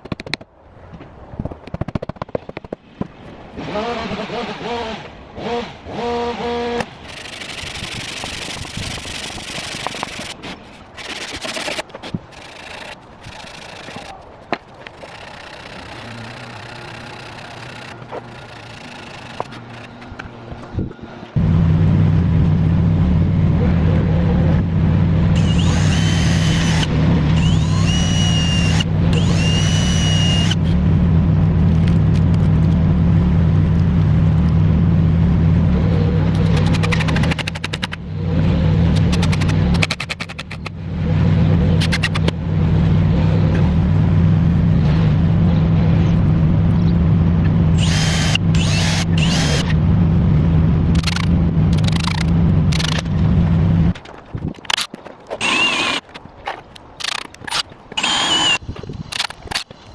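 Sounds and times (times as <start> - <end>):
motor droning: 15.0 - 30.9, 42.8 - 53.9, 55.4 - 56.0, 57.0 - 58.6.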